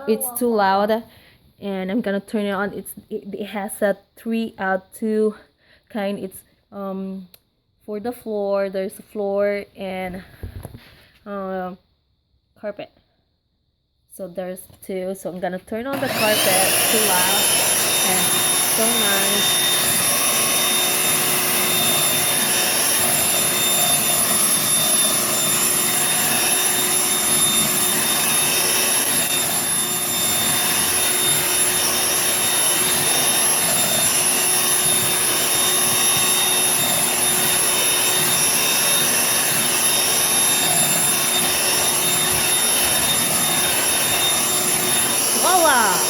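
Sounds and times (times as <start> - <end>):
stick vacuum running: 15.9 - 46.0.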